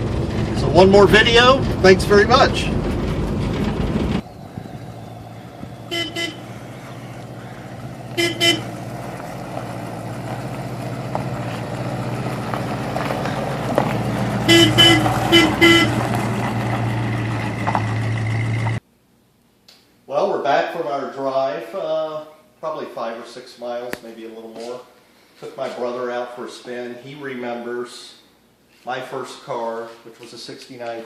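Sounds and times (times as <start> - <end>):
car engine running: 0.0 - 18.8
car horn double beeps: 5.6 - 7.0, 8.1 - 8.8, 14.4 - 16.0.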